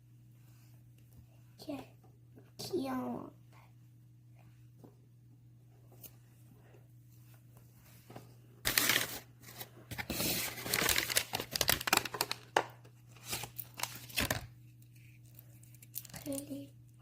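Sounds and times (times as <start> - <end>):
packaging torn open and crinkled: 8.6 - 12.6, 13.2 - 14.5, 15.6 - 16.6.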